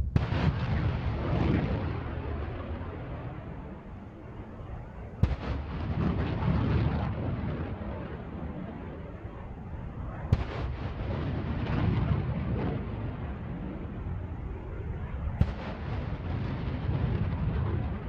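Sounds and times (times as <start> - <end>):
rocket launch crack: 0.0 - 3.5, 5.2 - 8.4.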